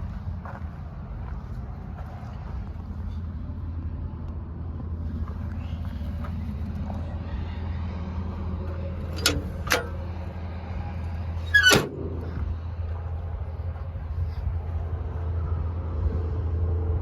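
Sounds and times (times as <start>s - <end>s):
bulldozer diesel engine idling: 4.8s - 15.5s
metal clank: 9.0s - 10.2s, 11.4s - 12.5s.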